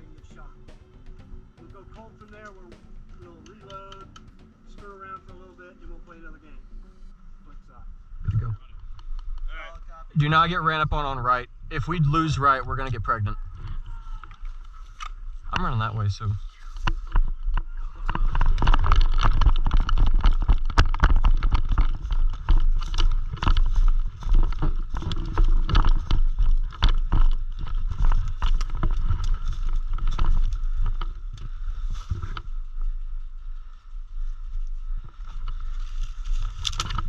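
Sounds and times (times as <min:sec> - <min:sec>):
running footsteps: 0:00.0 - 0:06.2, 0:18.0 - 0:33.0
low rumble of movement: 0:00.0 - 0:37.0
gear knocking and rattling: 0:18.3 - 0:31.2.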